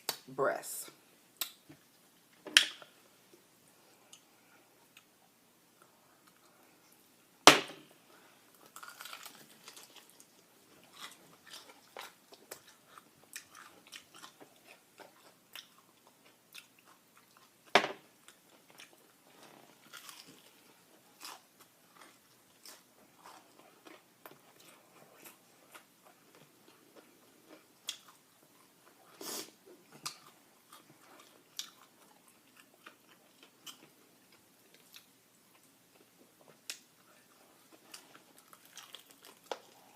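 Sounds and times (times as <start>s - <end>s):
chewing: 8.5s - 17.6s, 18.2s - 39.9s
crunching bites into fried chicken: 8.7s - 10.3s.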